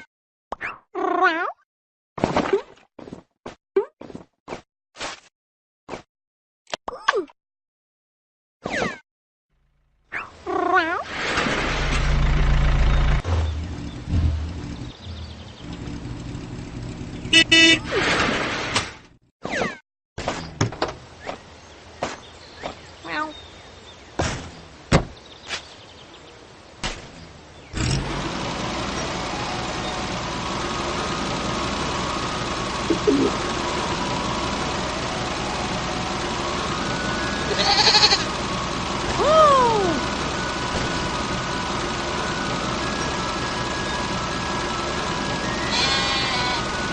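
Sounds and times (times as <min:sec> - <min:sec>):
cartoon engine rumble: 0:11.6 - 0:18.0, 0:27.8 - 0:46.9
short horn beeps: 0:17.3 - 0:17.9
rising and falling cartoon call: 0:39.1 - 0:40.2.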